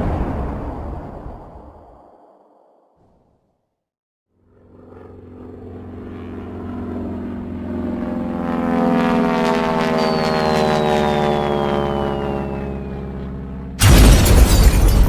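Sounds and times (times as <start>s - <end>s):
engine-like drone: 4.4s - 13.8s.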